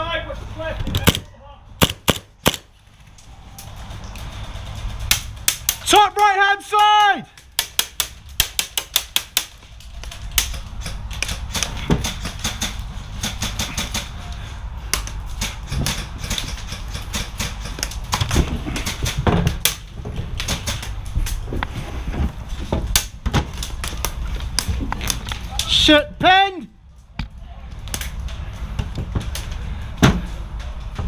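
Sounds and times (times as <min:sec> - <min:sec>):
low rumble: 0:00.4 - 0:05.6
airsoft guns firing: 0:01.0 - 0:02.8.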